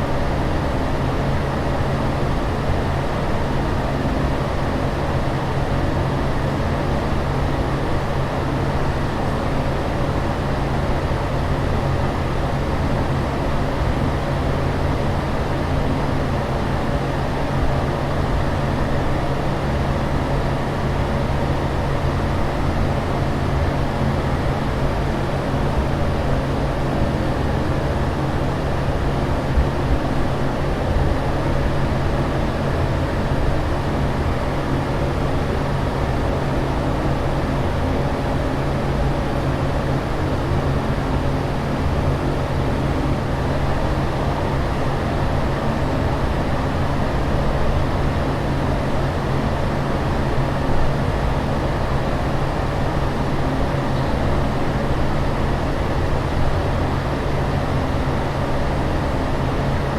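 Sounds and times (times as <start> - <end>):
airliner cabin drone: 0.0 - 59.9.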